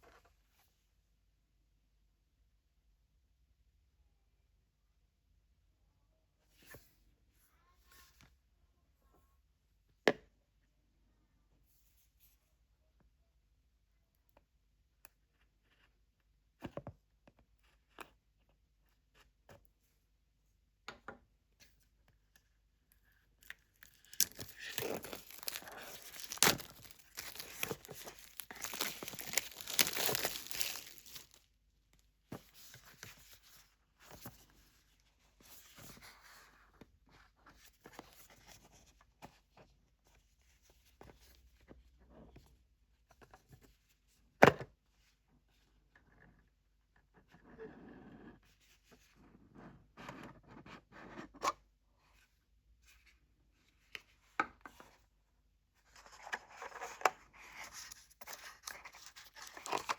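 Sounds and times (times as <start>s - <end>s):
packaging tearing and crinkling: 23.8s - 31.4s.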